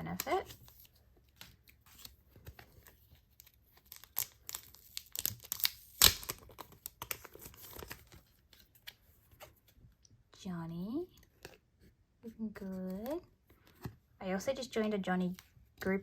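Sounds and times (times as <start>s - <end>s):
packaging crinkling and tearing: 1.9s - 8.9s.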